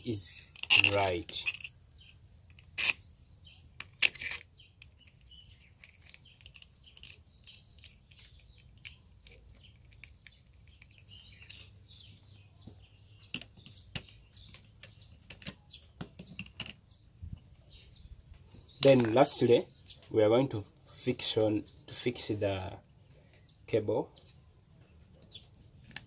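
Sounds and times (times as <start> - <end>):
faint birds chirping: 0.0 - 26.0
tools clicking and tapping: 12.6 - 16.8.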